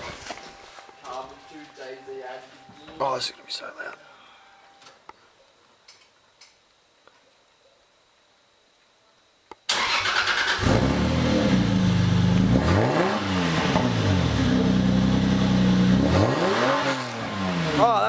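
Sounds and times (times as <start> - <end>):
car engine starting and revving: 9.7 - 18.0.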